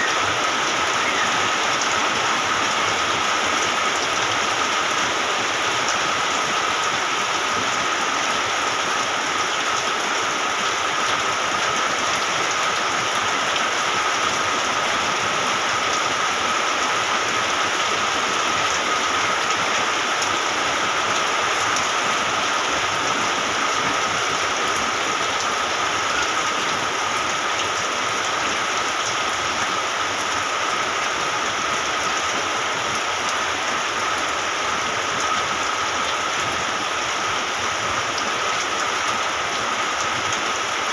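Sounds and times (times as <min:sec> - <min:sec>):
rain falling: 0:00.0 - 0:40.9.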